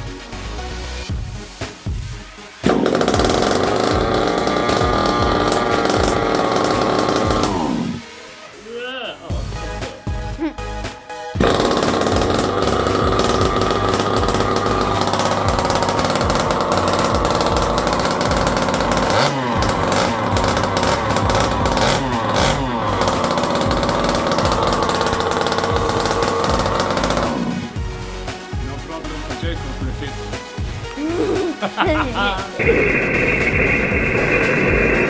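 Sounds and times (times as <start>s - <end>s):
small two-stroke engine revving: 2.6s - 8.2s, 11.4s - 27.9s, 32.5s - 35.0s.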